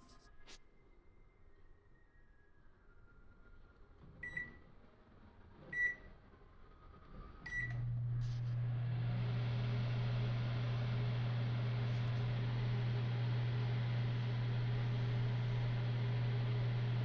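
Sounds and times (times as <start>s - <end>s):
microwave humming with fan noise: 7.5s - 17.0s
microwave control panel beeping: 9.1s - 17.0s.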